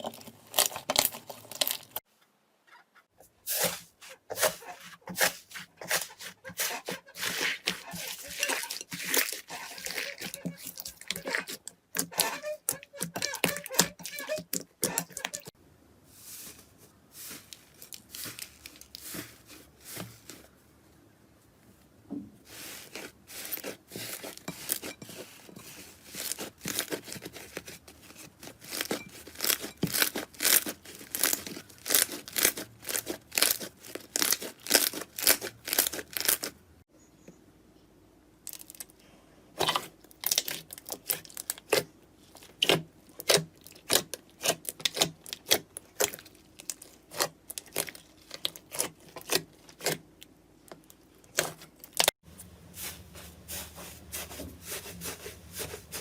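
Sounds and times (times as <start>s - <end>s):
slime crackling and popping: 28.4s - 36.5s.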